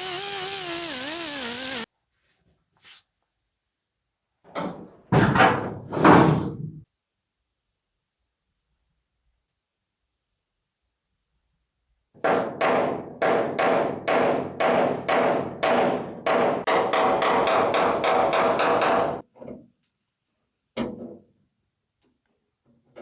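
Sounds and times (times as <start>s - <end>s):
hammer on sheet metal: 12.2s - 19.2s.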